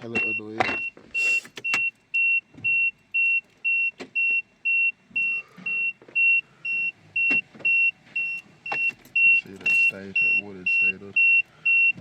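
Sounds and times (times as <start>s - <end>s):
car warning chime beeping: 0.0s - 12.0s.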